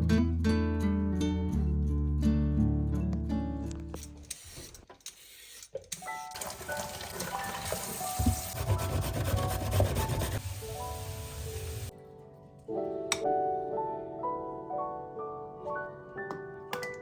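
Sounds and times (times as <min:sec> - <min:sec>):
rubbing or scrubbing noise: 0:06.4 - 0:10.8.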